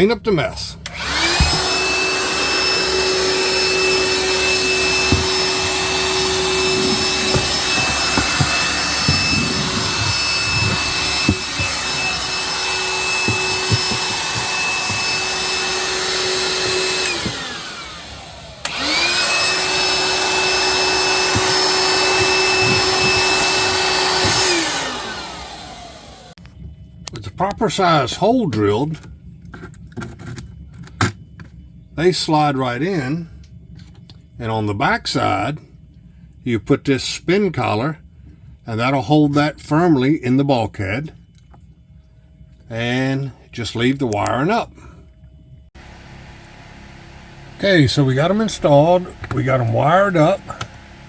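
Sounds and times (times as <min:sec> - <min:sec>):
vacuum cleaner whining: 0:00.8 - 0:26.4, 0:45.8 - 0:51.0.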